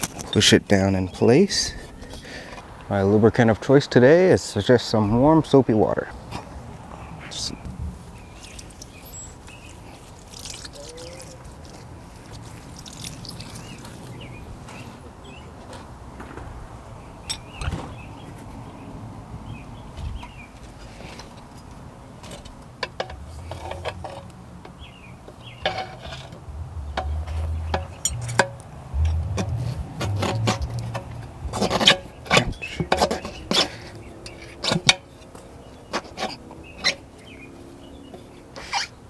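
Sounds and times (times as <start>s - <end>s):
tire spoons clinking on wheel rim: 0.0s - 2.9s, 6.2s - 16.0s, 17.2s - 18.1s, 20.2s - 37.4s.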